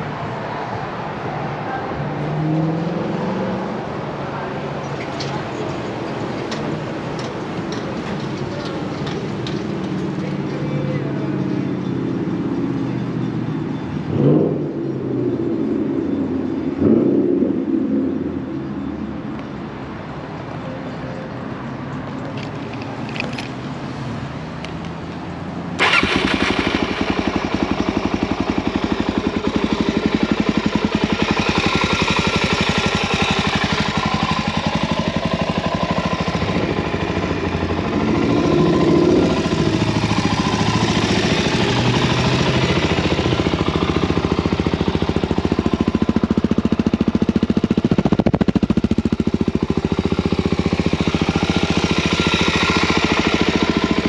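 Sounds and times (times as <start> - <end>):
motorcycle engine starting and idling: 4.9 - 12.1, 22.3 - 25.1, 25.7 - 54.0.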